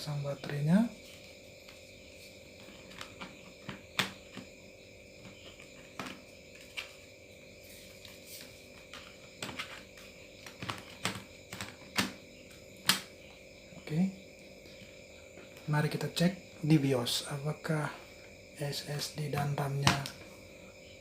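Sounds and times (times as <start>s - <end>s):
faint background hum: 0.0s - 21.0s
plastic clicks and knocks: 8.9s - 12.2s.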